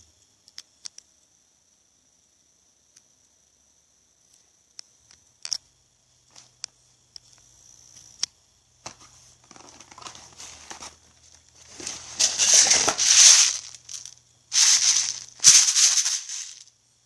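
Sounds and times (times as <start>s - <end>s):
rustling: 8.8s - 16.7s.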